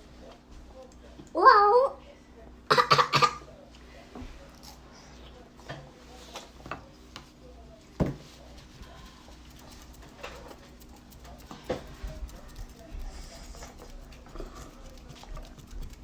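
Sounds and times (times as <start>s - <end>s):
faint low hum: 0.0s - 16.0s
clicks and knocks of eating: 8.1s - 16.0s.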